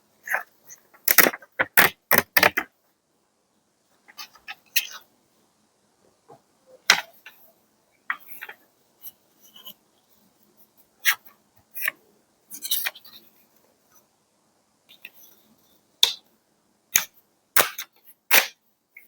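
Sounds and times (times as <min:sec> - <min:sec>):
sharp clicks and taps on paper: 0:01.0 - 0:02.7.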